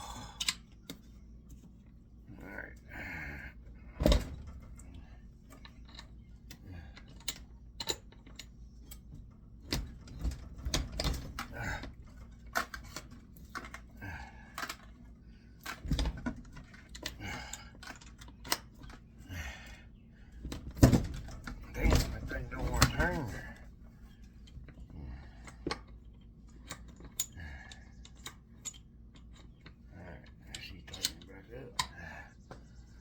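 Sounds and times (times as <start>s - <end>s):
hand tools clicking on metal: 4.7s - 9.1s, 9.7s - 15.0s, 25.3s - 32.2s.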